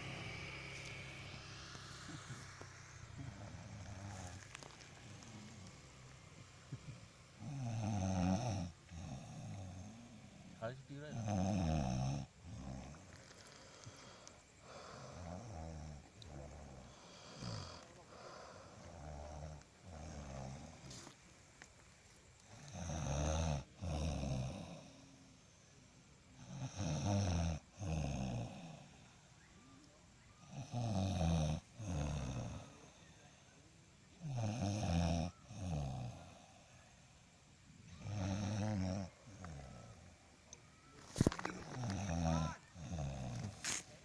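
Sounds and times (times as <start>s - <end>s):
person snoring loudly: 1.5s - 6.0s, 6.7s - 21.0s, 22.5s - 25.2s, 26.4s - 29.0s, 30.4s - 33.0s, 34.2s - 36.7s, 37.9s - 40.1s, 41.0s - 43.8s.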